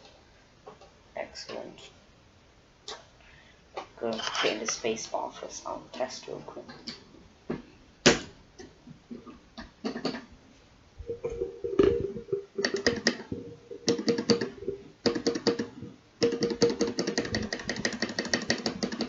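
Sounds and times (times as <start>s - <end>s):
mechanical keyboard key presses: 15.1s - 19.0s.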